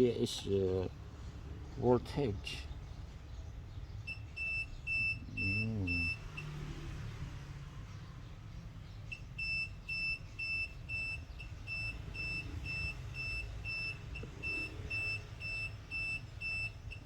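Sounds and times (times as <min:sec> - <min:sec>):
high-pitched alarm beeping: 0:04.1 - 0:06.5, 0:09.1 - 0:17.0.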